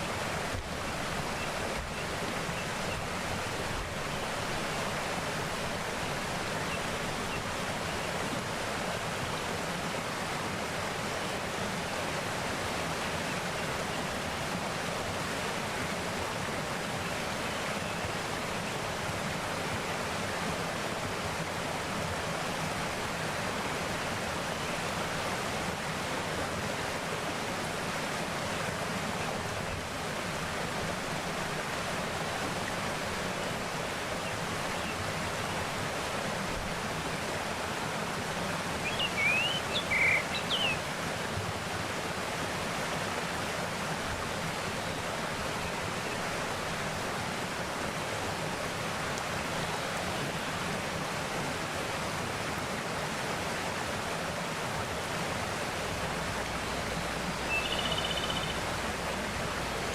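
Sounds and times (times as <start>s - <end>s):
stream flowing: 0.0s - 59.9s
bird chirping: 38.9s - 40.8s, 57.4s - 58.6s.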